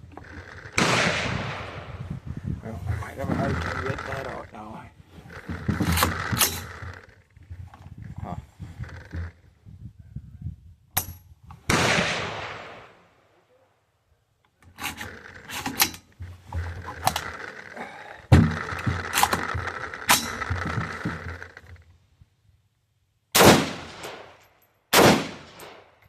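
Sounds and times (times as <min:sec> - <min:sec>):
metallic clicks and scraping: 0:05.2 - 0:08.1, 0:14.4 - 0:21.9.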